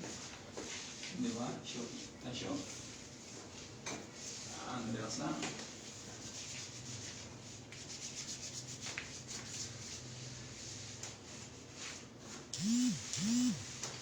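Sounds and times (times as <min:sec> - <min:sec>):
short rising and falling pitched sounds: 0:12.6 - 0:13.6.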